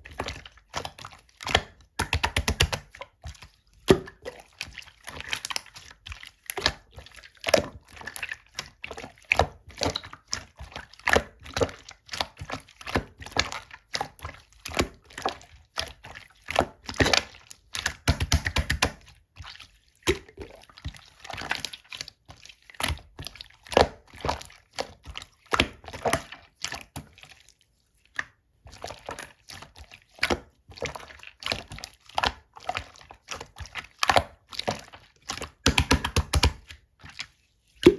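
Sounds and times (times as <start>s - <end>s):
slime squeezed wet clicks and pops: 35.6s - 36.6s.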